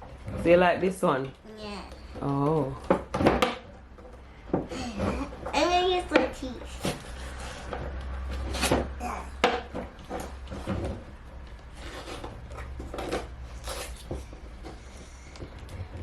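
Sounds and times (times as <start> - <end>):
box packaging scrapes and rustles: 6.7 - 9.0, 10.2 - 15.3.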